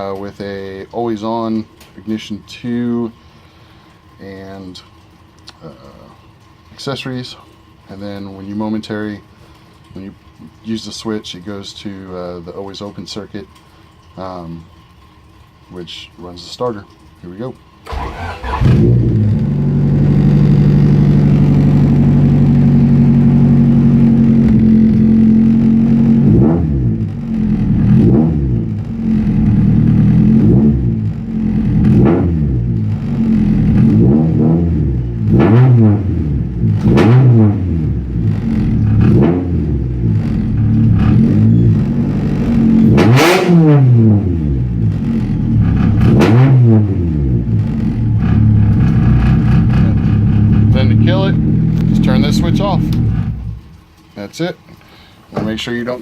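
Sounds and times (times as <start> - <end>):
car engine starting and idling: 16.8 - 54.1
car engine revving: 17.8 - 53.8.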